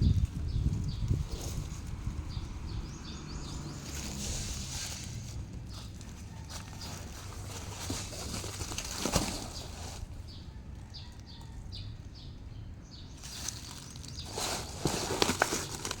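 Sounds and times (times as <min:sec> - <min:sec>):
rustling: 0:03.5 - 0:10.4, 0:13.2 - 0:16.0.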